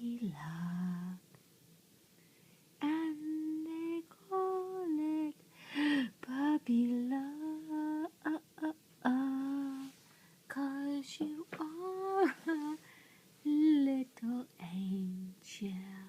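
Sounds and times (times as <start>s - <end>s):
breath: 5.5s - 6.1s, 12.8s - 13.3s
woman humming: 7.2s - 9.9s, 10.6s - 12.8s.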